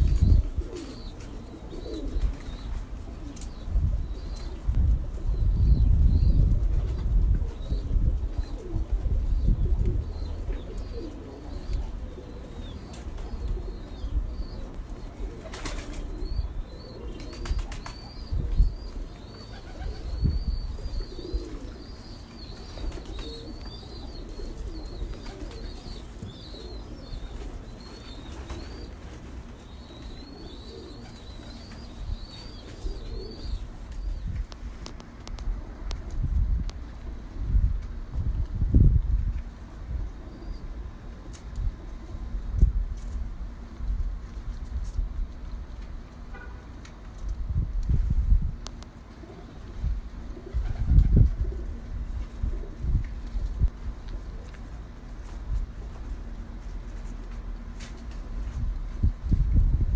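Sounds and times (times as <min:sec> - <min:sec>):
pigeons cooing: 0:00.0 - 0:36.0, 0:49.1 - 0:54.9
small birds chirping: 0:09.3 - 0:34.6.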